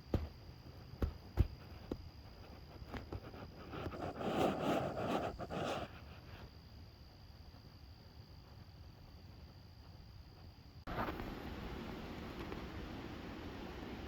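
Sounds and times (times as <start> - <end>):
rustling or scraping: 1.6 - 6.6.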